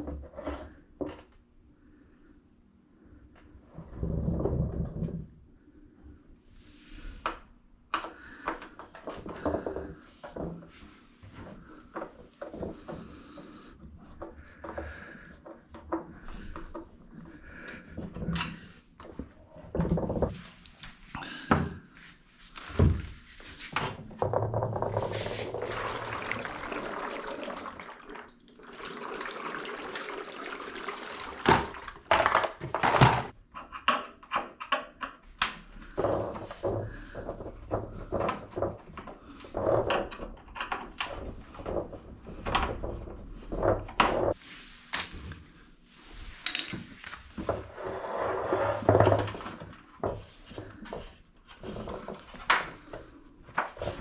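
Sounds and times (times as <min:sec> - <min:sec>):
liquid sloshing: 0:24.8 - 0:32.6.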